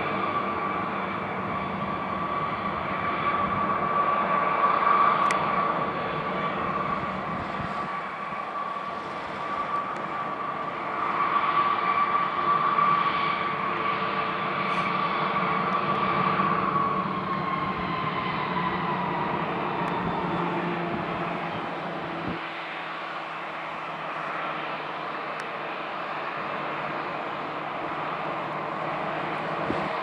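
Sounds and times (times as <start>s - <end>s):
jet engines whining: 0.0s - 30.0s.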